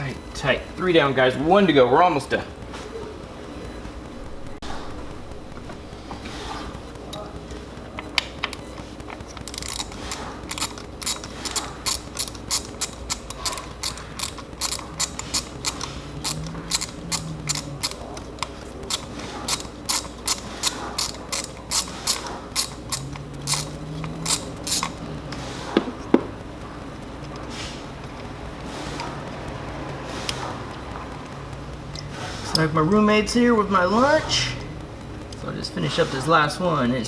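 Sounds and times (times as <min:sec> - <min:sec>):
socket ratchet clicking: 0:08.4 - 0:25.1.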